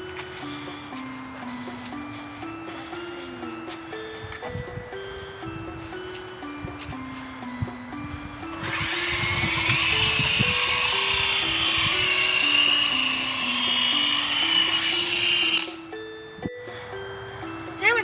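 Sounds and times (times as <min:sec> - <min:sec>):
simple background melody: 0:00.0 - 0:18.0
toy helicopter drone whining: 0:08.5 - 0:15.9.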